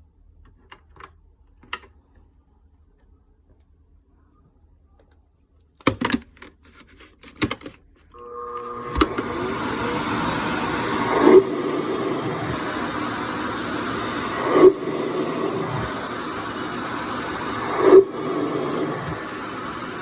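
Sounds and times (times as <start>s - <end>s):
vacuum suction rushing air: 8.2s - 20.0s.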